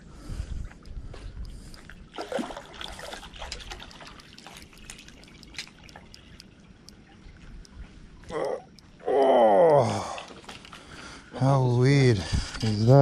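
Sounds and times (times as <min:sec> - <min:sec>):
water trickling and dripping: 0:00.7 - 0:11.2
small splashes and clicks: 0:01.4 - 0:11.2.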